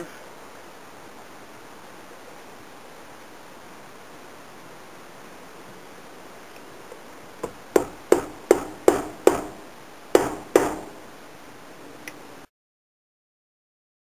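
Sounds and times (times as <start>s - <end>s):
hammer striking metal: 7.4s - 11.1s.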